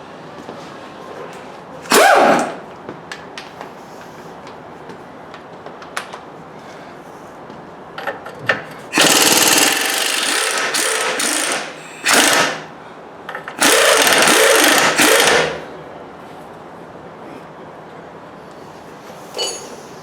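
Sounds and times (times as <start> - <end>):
power tool running: 1.9 - 2.6, 8.9 - 12.7, 13.6 - 15.6.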